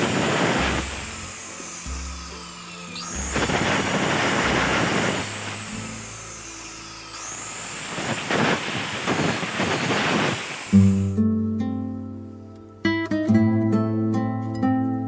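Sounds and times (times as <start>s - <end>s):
power tool cutting bamboo: 0.0s - 11.2s.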